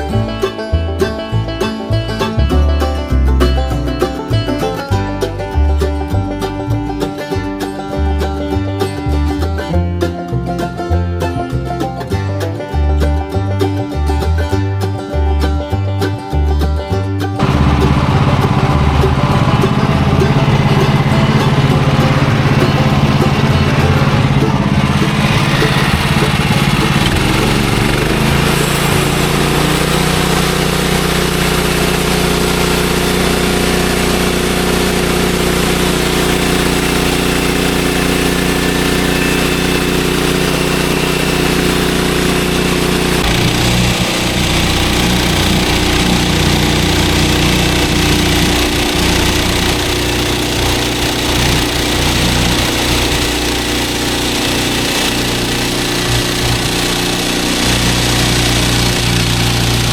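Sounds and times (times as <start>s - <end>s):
small gasoline engine running: 17.3s - 59.9s.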